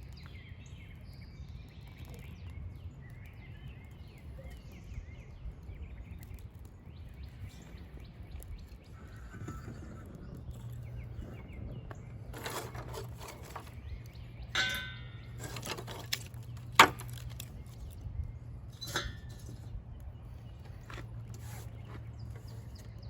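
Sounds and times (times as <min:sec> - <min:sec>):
burning wood crackling: 0:00.0 - 0:23.0
steady low hum: 0:06.8 - 0:23.0.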